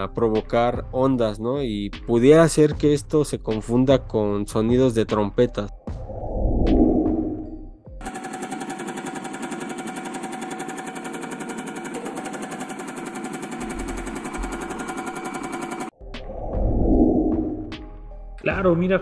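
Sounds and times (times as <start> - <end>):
deep rumble: 6.0 - 7.5.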